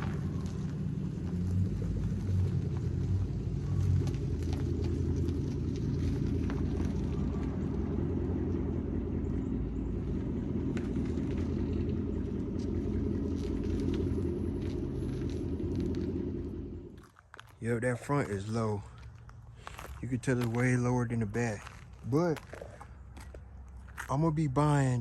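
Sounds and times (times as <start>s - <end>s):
car engine rumbling: 0.0s - 25.0s
road and wind noise: 0.0s - 25.0s.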